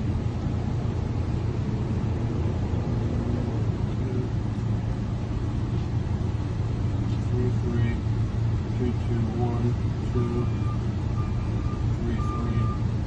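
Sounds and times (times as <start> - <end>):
vehicle engine idling: 0.0 - 13.0.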